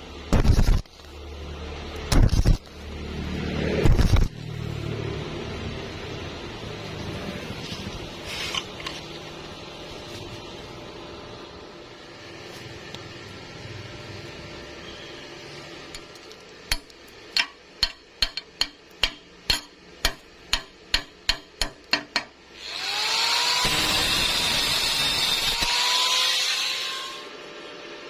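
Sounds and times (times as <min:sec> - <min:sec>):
power tool whining: 0:22.6 - 0:27.5.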